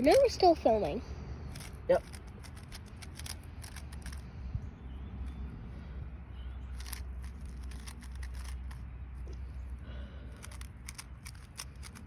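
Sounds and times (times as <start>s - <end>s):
puzzle cube clicking: 1.5s - 4.2s, 6.7s - 8.8s, 10.4s - 12.0s.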